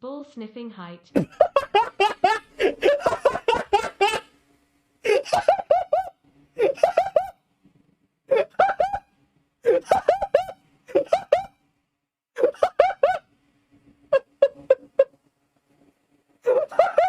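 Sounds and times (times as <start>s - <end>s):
high-pitched laughter: 1.2s - 4.3s, 5.1s - 7.4s, 8.3s - 9.0s, 9.7s - 11.6s, 12.4s - 13.2s, 14.1s - 15.1s, 16.4s - 17.0s.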